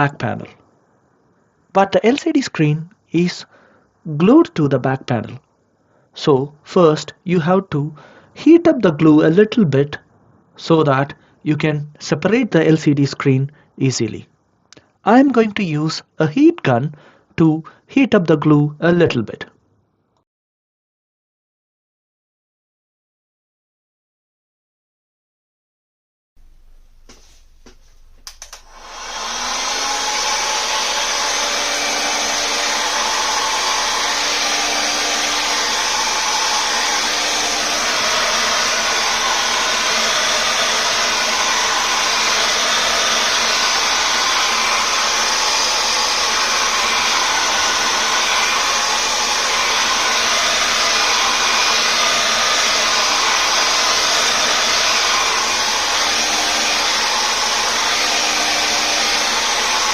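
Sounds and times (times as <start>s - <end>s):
heat gun blower running: 26.4s - 59.9s.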